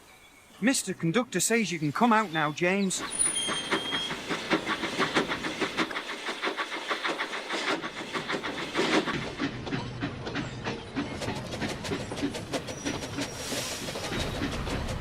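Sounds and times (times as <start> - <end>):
steam hiss: 1.7 - 9.6, 12.3 - 15.0
steam locomotive puffing: 2.9 - 15.0.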